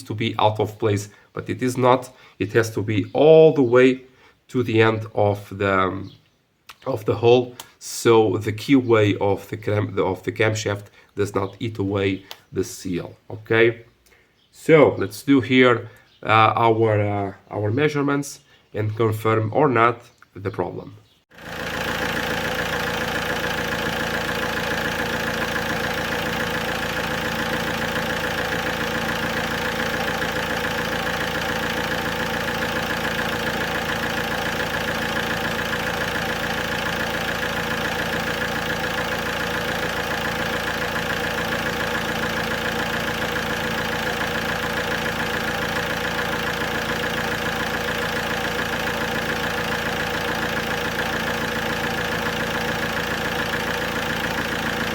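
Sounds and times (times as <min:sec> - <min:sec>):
diesel engine idling: 0:21.3 - 0:54.9.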